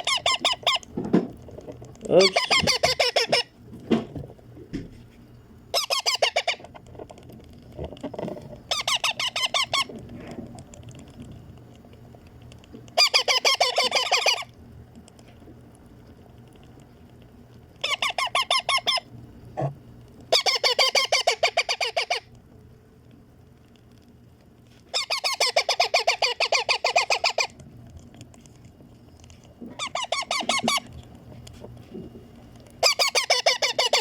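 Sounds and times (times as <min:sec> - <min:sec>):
baby parakeets begging calls: 0:00.0 - 0:00.8, 0:02.2 - 0:03.5, 0:05.7 - 0:06.6, 0:08.7 - 0:09.9, 0:13.0 - 0:14.4, 0:17.8 - 0:19.0, 0:20.3 - 0:22.2, 0:24.9 - 0:27.5, 0:29.8 - 0:30.9, 0:32.8 - 0:34.0.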